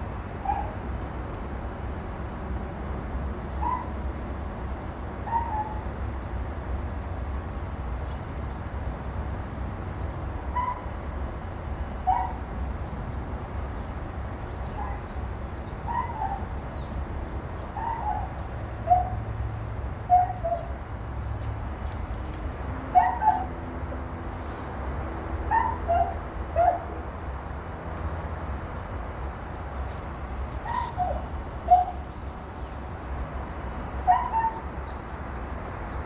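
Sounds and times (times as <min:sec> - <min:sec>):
dog whimpering yelps: 0:05.3 - 0:05.8, 0:15.9 - 0:16.4, 0:17.8 - 0:19.2, 0:20.1 - 0:20.7, 0:23.0 - 0:23.5, 0:25.5 - 0:26.9, 0:30.6 - 0:32.0, 0:34.1 - 0:34.7
steady low rumble: 0:23.8 - 0:36.0.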